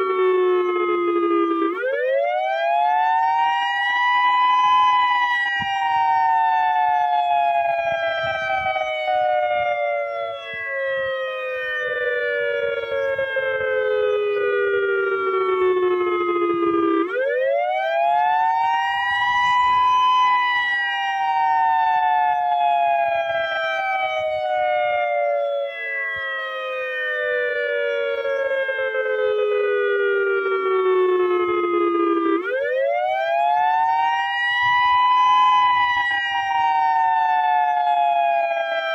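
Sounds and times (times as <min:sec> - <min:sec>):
electronic warning siren: 0:00.0 - 0:38.9.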